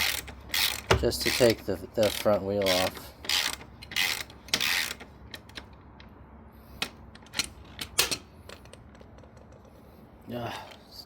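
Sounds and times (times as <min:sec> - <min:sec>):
sharp metal clicks and knocks: 0:06.8 - 0:09.8.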